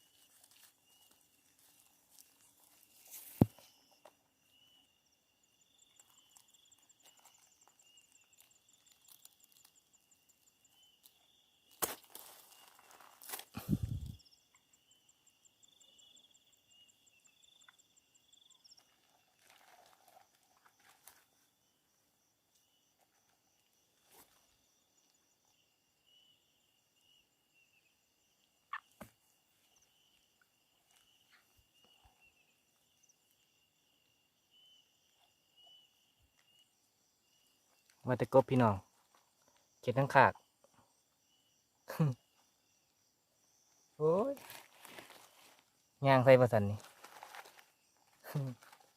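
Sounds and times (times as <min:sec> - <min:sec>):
night insects trilling: 0:00.0 - 0:48.9
soft rustles: 0:46.8 - 0:48.9.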